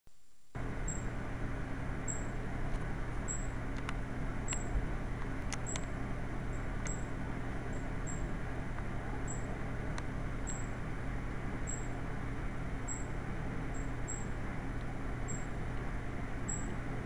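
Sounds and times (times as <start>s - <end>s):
low hum and hiss: 0.1s - 17.0s
thin high chirp: 0.9s - 1.1s, 2.1s - 2.4s, 3.3s - 3.6s, 6.5s - 7.1s, 7.7s - 8.3s, 10.4s - 10.8s, 11.6s - 12.0s, 12.9s - 13.1s, 13.7s - 14.3s, 15.2s - 15.6s, 16.5s - 16.8s
sharp ticks: 3.3s - 4.7s.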